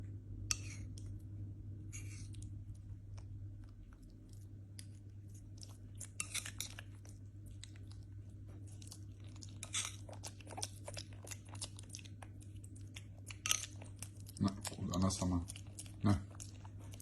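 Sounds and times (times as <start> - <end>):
steady low hum: 0.0 - 17.0
monkey chewing and crunching food: 2.3 - 17.0.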